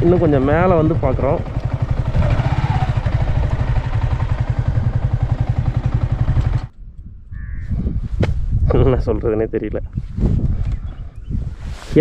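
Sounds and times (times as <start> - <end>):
motorcycle engine running: 0.0 - 6.7.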